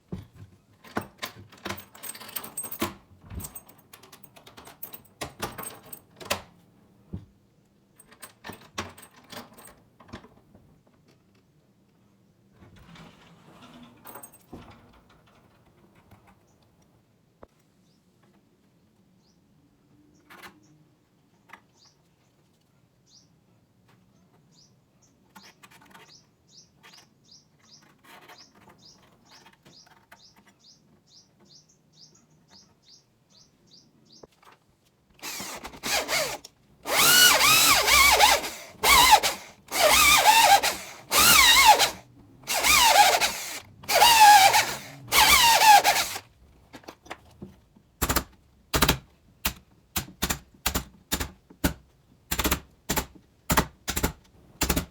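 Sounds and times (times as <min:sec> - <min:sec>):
electric drill boring into wood: 0:35.2 - 0:46.2.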